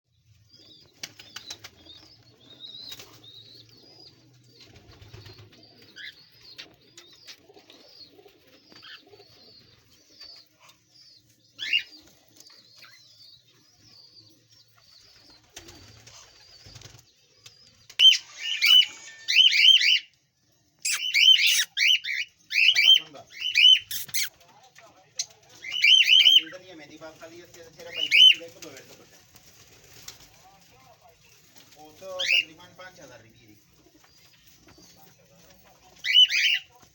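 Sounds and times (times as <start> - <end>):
cockatiels chirping softly: 20.8 - 24.3.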